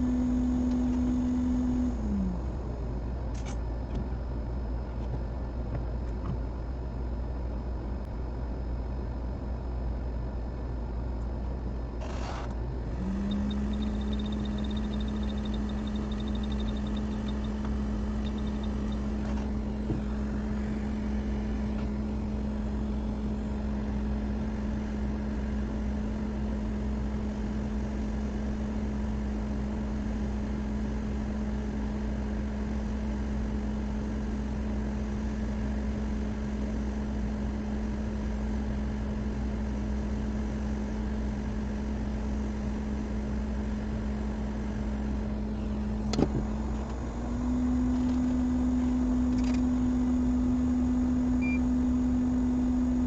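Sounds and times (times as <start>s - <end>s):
electric motor humming: 0.0s - 2.5s, 12.8s - 23.7s.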